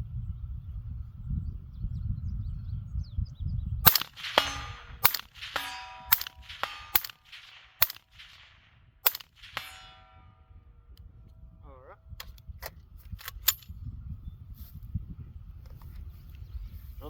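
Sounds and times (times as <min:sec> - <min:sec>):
suppressed rifle shots: 0:03.9 - 0:10.4
ringing metallic clangs: 0:03.9 - 0:10.6.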